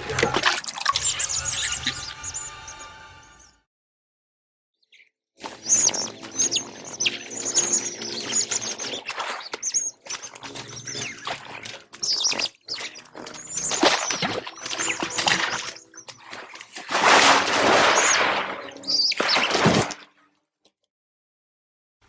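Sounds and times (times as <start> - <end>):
creature chirps and squeaks: 0.9 - 3.0.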